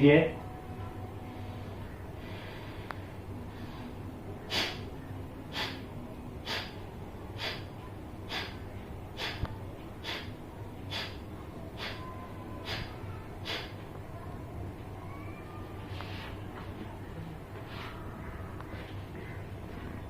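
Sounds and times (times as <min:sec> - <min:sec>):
man exhaling forcefully through nose: 0:04.5 - 0:04.8, 0:05.5 - 0:05.8, 0:06.4 - 0:06.8, 0:07.4 - 0:07.7, 0:08.3 - 0:08.6, 0:09.2 - 0:09.4, 0:10.0 - 0:10.3, 0:10.9 - 0:11.2, 0:11.8 - 0:12.0, 0:12.6 - 0:13.7.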